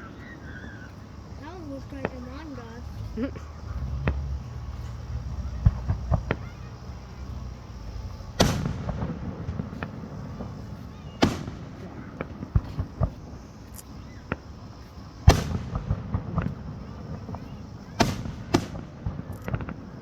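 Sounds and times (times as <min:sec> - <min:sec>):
small firework pops: 0:04.0 - 0:07.4, 0:08.4 - 0:20.0
fireworks bangs with echo: 0:04.0 - 0:20.0.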